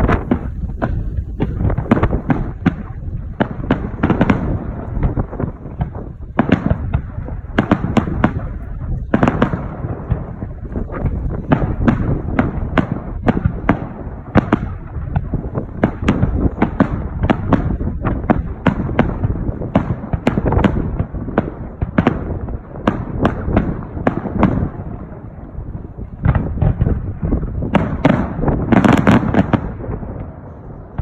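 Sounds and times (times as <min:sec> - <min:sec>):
low rumble of bursts: 0:00.0 - 0:19.8
fireworks bangs: 0:00.0 - 0:31.0.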